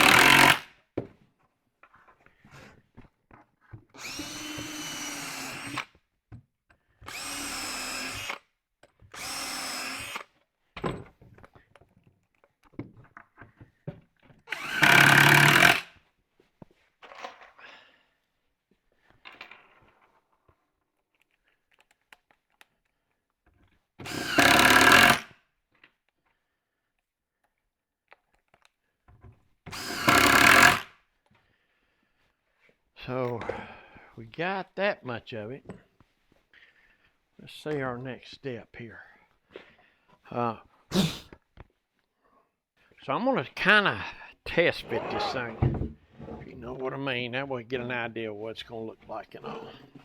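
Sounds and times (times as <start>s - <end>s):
power drill driving screws: 0.0s - 0.7s, 4.0s - 5.9s, 7.0s - 8.4s, 9.1s - 10.3s, 14.5s - 15.9s, 24.0s - 25.4s, 29.7s - 30.9s.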